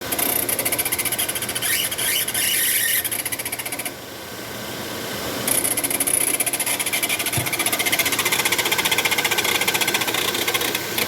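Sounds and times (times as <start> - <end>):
fast mechanical ticking: 5.5 - 11.0.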